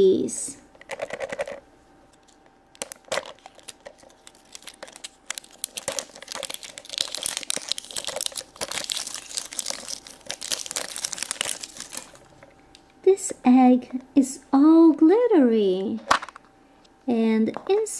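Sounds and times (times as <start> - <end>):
wrapper crinkling and tearing: 2.1 - 12.4.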